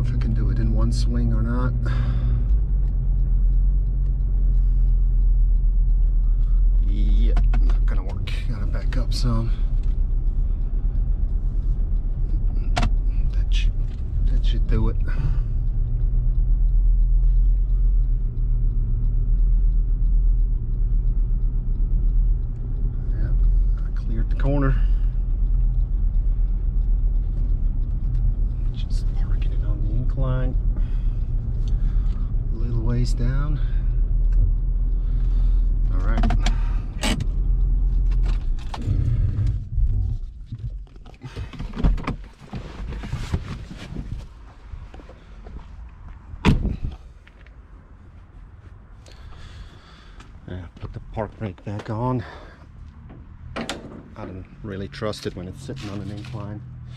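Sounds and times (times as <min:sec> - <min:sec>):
faint fast ticking: 0:00.0 - 0:38.2, 0:48.9 - 0:53.5
vehicle engine low rumble: 0:00.0 - 0:56.9.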